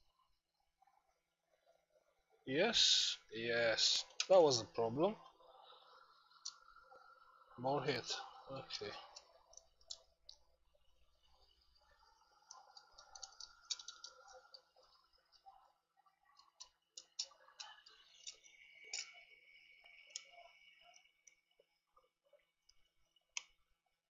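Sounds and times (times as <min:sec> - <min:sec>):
faint high whine: 0:01.5 - 0:24.0
small tools clicking and tapping: 0:12.4 - 0:15.5, 0:16.4 - 0:21.4.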